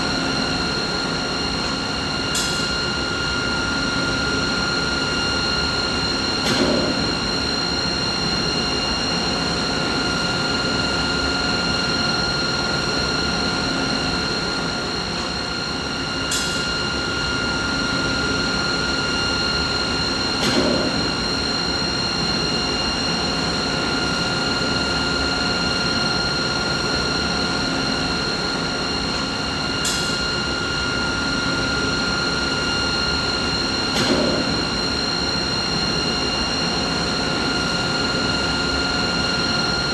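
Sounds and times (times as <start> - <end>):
machinery whine: 0.0 - 39.9.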